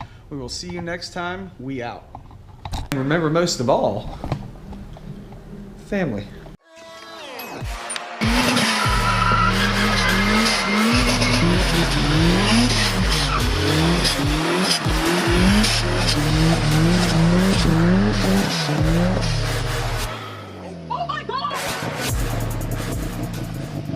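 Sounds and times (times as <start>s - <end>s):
car engine revving hard: 8.2s - 20.9s.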